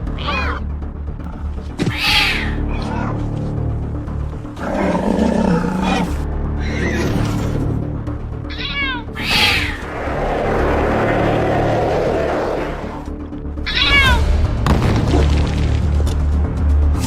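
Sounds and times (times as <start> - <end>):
background music: 0.0 - 17.0
cat meowing: 0.2 - 0.6, 1.8 - 3.2, 8.5 - 9.8, 13.6 - 14.2.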